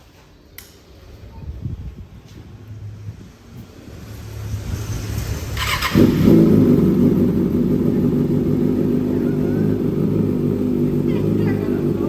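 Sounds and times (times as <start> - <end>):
motorcycle engine starting and idling: 4.5 - 12.0.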